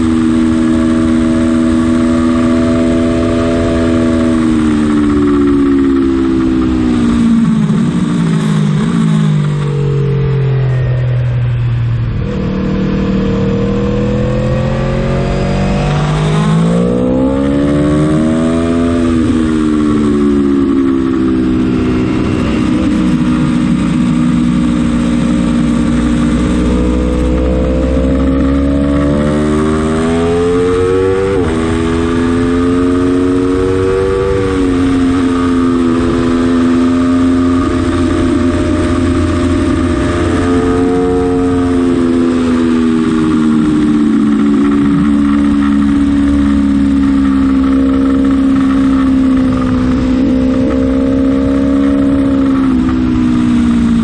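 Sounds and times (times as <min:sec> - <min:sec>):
motorcycle engine revving: 0:00.0 - 0:54.0
wind and road rush: 0:00.0 - 0:54.0.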